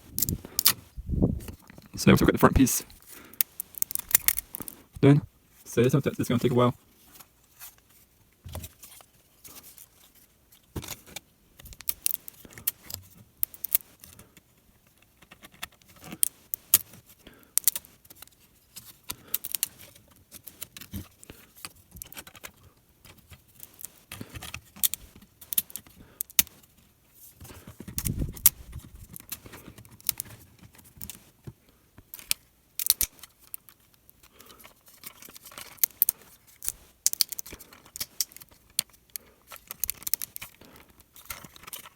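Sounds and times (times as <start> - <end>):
plastic clicks and snaps: 32.0 - 34.4, 35.0 - 40.6.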